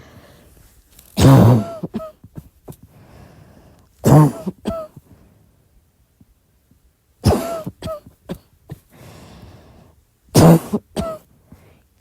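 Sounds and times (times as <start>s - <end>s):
woman coughing: 1.2s - 2.2s, 4.0s - 5.0s, 7.2s - 8.8s, 10.4s - 11.2s.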